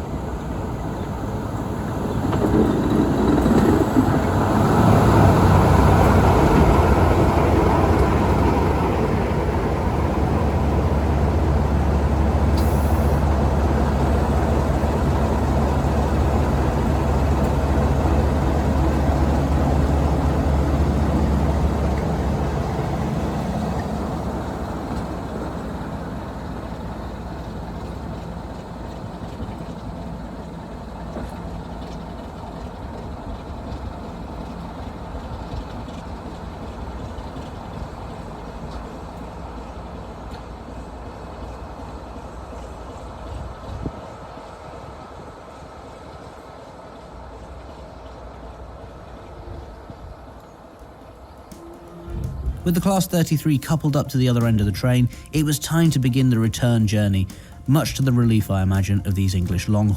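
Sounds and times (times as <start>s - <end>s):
diesel locomotive engine throbbing: 0.0s - 59.9s.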